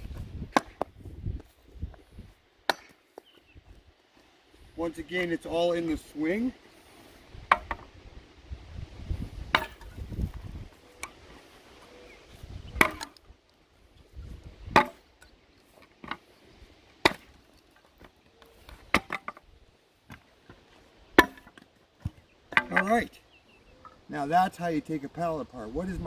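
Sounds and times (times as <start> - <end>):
tool striking wooden pallet: 7.5 - 7.9, 9.5 - 9.9, 12.8 - 13.2, 14.7 - 15.0, 18.9 - 19.4, 21.2 - 21.6, 22.5 - 23.0.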